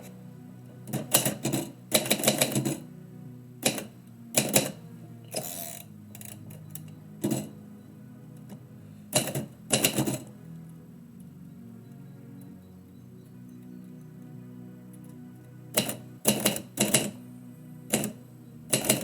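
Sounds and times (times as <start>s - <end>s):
quiet background music: 0.0s - 19.0s
typewriter keys clacking: 17.9s - 19.0s.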